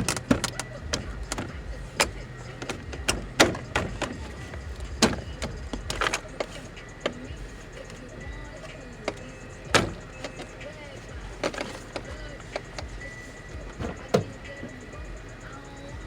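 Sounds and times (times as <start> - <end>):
clicks of plastic trim and tools: 0.0 - 7.2, 11.4 - 13.0
background music: 0.0 - 16.0.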